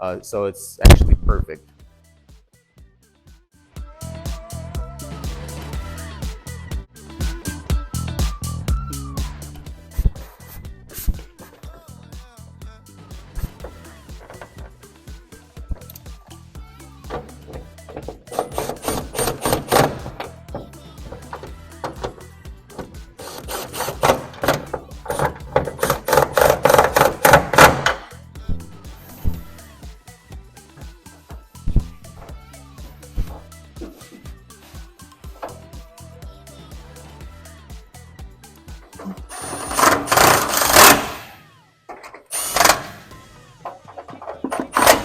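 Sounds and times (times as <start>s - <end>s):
faint background music: 7.4s - 45.0s
power tool running: 22.8s - 28.1s, 39.3s - 41.4s, 42.3s - 45.0s
machine clattering rapidly: 39.3s - 41.2s.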